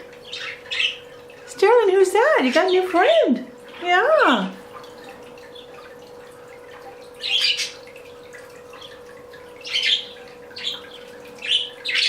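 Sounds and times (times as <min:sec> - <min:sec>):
faint steady hum: 0:00.0 - 0:12.0
budgies chirping: 0:00.2 - 0:01.1, 0:07.2 - 0:07.9, 0:09.6 - 0:12.0.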